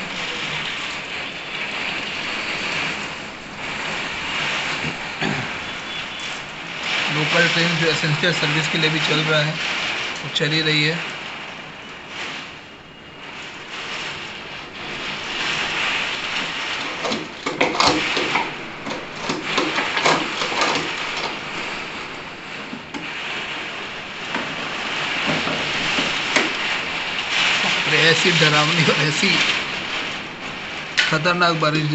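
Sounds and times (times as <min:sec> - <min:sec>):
heavy wind-driven rain: 0:00.0 - 0:31.9
knocks and rattles: 0:16.4 - 0:22.0.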